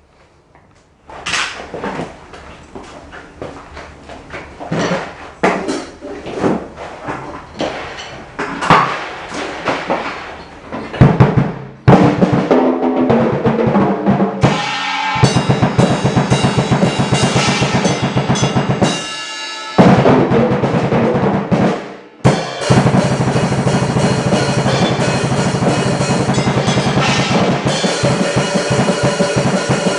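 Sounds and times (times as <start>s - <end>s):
drum kit playing: 11.0s - 29.9s
cymbals ringing: 14.4s - 20.6s, 22.0s - 29.9s.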